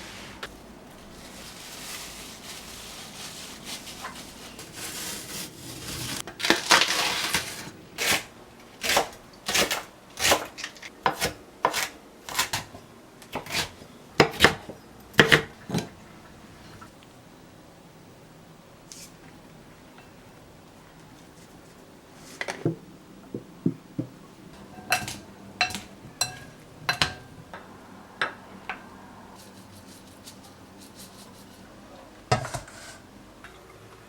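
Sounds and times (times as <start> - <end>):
soft rustle: 0.0 - 6.2
dishes and utensils clattering: 24.6 - 27.6, 32.3 - 33.8.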